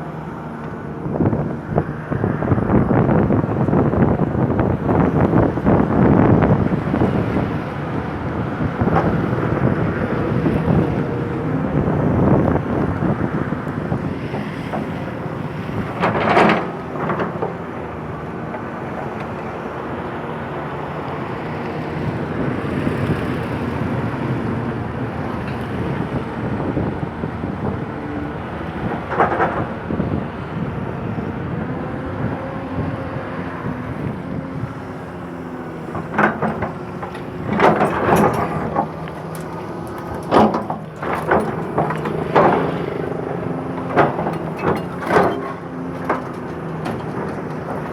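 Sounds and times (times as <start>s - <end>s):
excavator diesel engine running: 0.0s - 47.9s
machine knocks and clanks: 14.0s - 17.8s, 34.7s - 47.9s.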